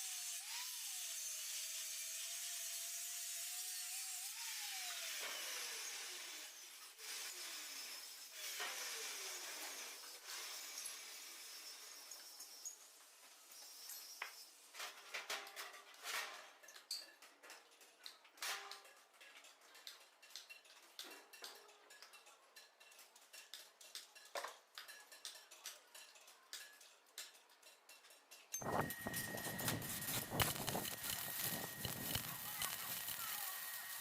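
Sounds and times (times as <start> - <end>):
small steel pieces clinking: 16.2 - 34.0.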